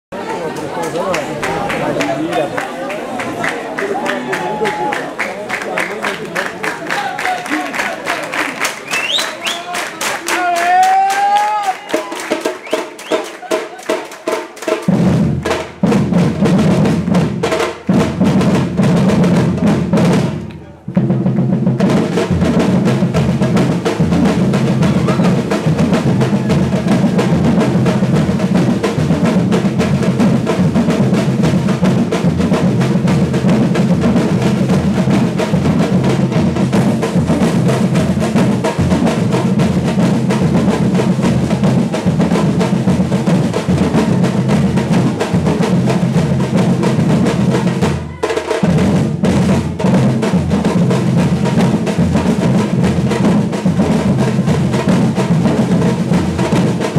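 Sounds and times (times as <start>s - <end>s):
hand percussion: 8.6s - 16.5s
snare rolls: 11.8s - 15.8s
bass drums: 14.9s - 56.9s.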